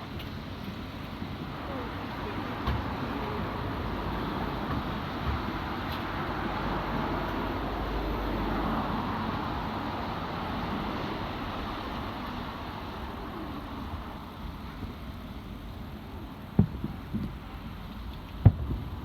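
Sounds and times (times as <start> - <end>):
street traffic: 0.0 - 19.0.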